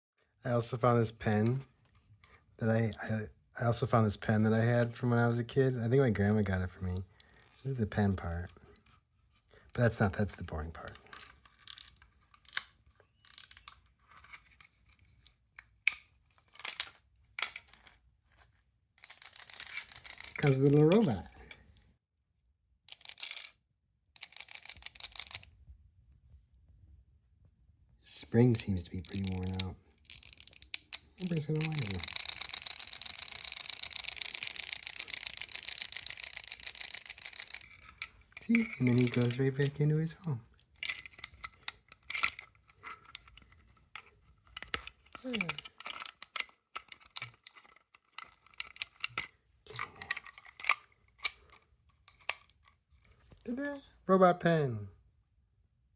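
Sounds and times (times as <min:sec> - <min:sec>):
plastic toy clicking: 0:11.2 - 0:14.2, 0:19.0 - 0:21.3, 0:22.9 - 0:23.6, 0:24.2 - 0:25.5, 0:28.5 - 0:39.9, 0:40.7 - 0:52.8.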